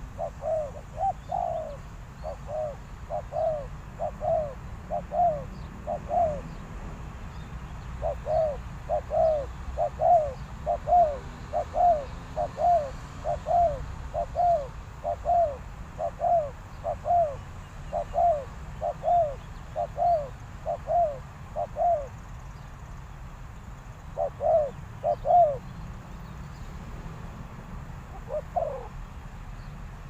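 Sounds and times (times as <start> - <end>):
dove cooing: 0.0 - 6.6, 8.0 - 22.2, 24.1 - 25.7, 28.0 - 29.1.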